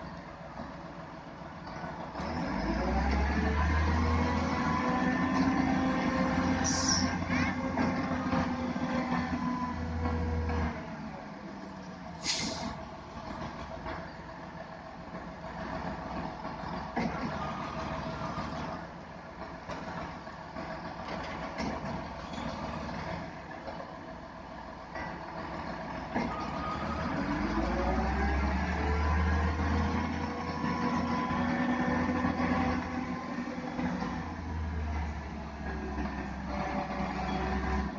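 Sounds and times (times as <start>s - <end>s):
diesel truck engine running: 0.0s - 37.9s
air release hiss: 12.2s - 12.8s.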